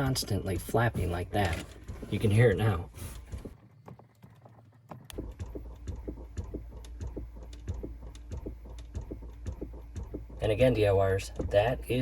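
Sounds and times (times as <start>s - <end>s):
low hum: 5.1s - 12.0s.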